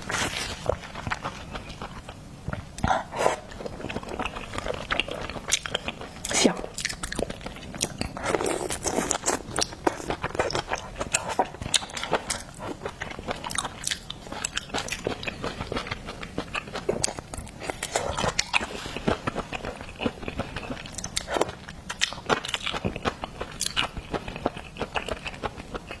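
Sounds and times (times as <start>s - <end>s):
chewing crunchy seafood: 0.0s - 26.0s.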